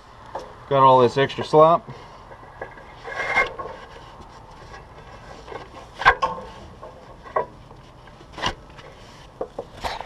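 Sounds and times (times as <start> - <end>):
strap rubbing and rustling: 2.0 - 10.0.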